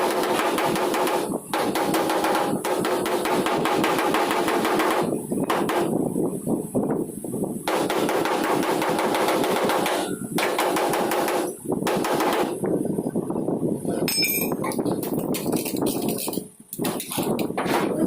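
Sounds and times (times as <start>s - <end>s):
hammering on metal: 0.0s - 6.0s, 7.7s - 12.6s.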